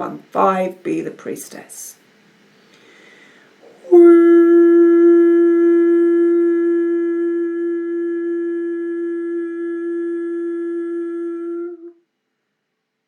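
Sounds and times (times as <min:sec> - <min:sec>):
long steady musical tone: 0:03.8 - 0:12.1.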